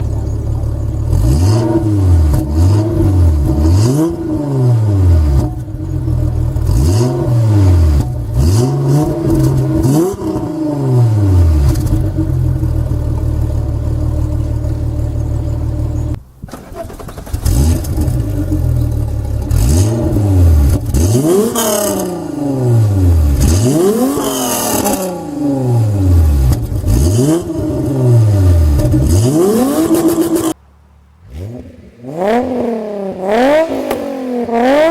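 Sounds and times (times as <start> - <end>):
car engine revving: 0.0 - 34.9.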